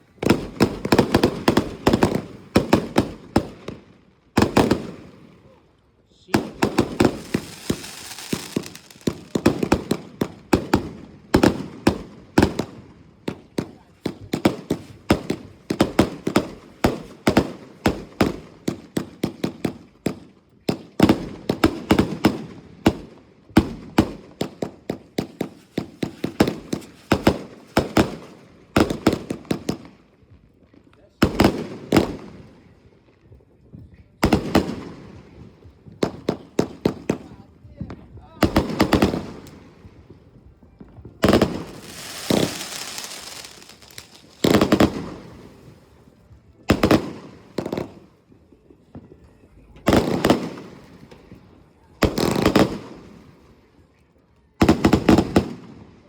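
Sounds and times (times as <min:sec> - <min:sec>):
fireworks cake rapid bangs: 0:00.2 - 0:03.8, 0:04.4 - 0:05.2, 0:06.2 - 0:29.9, 0:34.2 - 0:45.9, 0:46.7 - 0:48.1, 0:52.0 - 0:53.2, 0:54.6 - 0:55.8.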